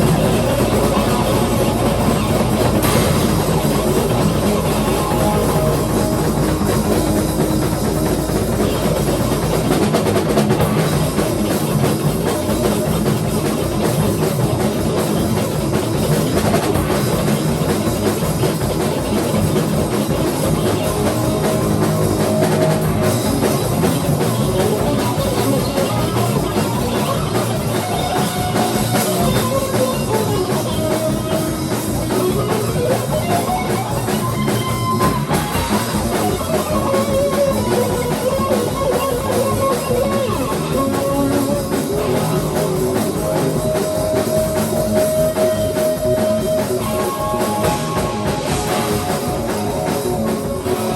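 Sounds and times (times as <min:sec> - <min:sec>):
sliding guitar lines: 0:00.0 - 0:12.1
drum kit beat: 0:00.0 - 0:50.9
electric guitar: 0:00.0 - 0:50.9.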